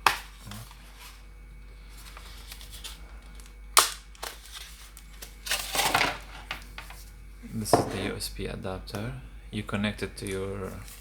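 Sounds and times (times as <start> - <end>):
packaging rustling: 1.9 - 6.6
box snapping open: 3.8 - 4.6.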